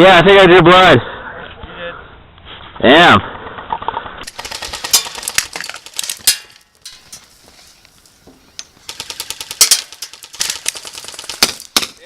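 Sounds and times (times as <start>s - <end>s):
airsoft guns firing bursts: 4.3s - 6.4s, 8.8s - 12.0s.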